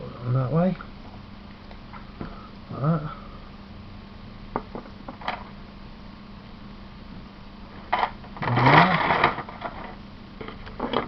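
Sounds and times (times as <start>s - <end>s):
steady low hum: 0.0s - 11.0s
plastic parts rattling: 7.9s - 11.0s.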